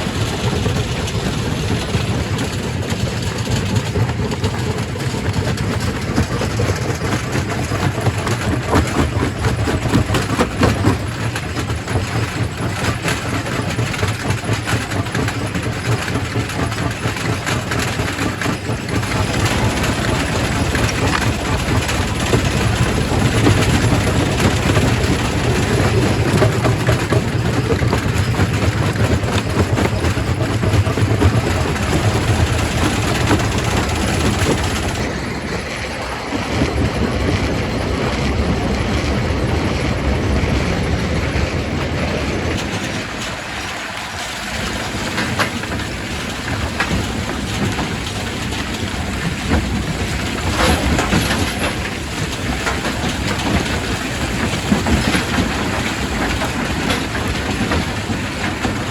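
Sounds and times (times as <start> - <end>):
low machine drone: 18.5 - 58.9.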